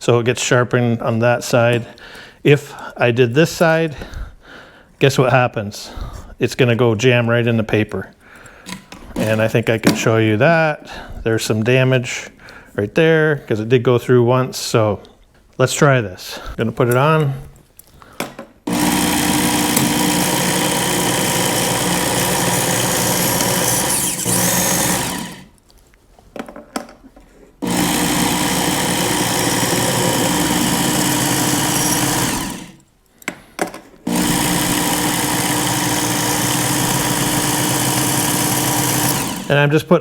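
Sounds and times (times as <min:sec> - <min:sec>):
knife sharpener belt running: 0:18.7 - 0:25.5, 0:27.6 - 0:32.8, 0:34.1 - 0:39.6.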